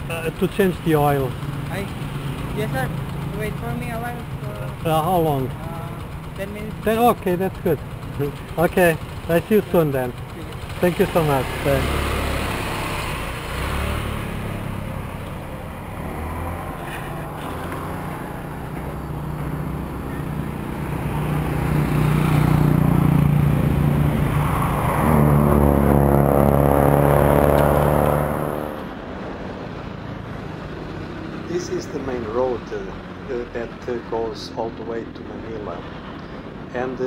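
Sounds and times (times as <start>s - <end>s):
motorcycle engine running: 0.0s - 24.4s, 26.0s - 28.9s
road traffic: 0.0s - 37.0s.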